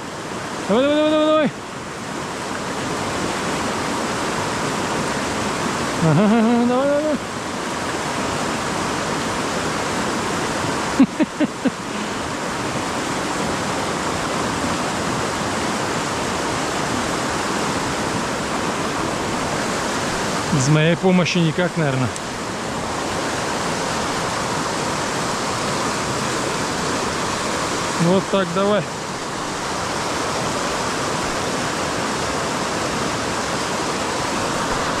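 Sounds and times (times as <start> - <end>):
fast-flowing stream rushing: 0.0 - 35.0.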